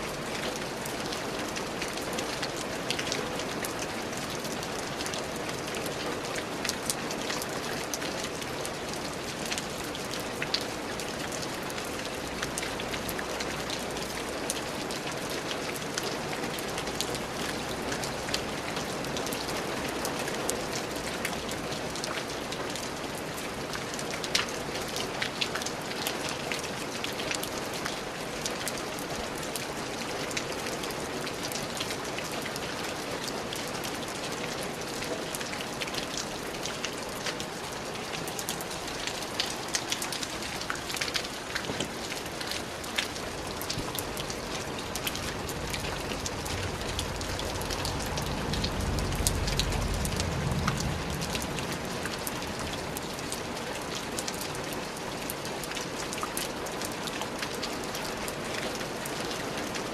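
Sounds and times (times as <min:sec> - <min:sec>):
rain falling: 0:00.0 - 0:59.9
raindrops pattering on surface: 0:00.0 - 0:59.9.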